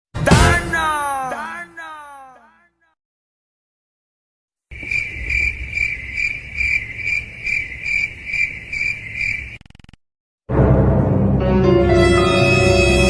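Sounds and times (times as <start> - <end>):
crickets chirping: 4.7 - 9.9.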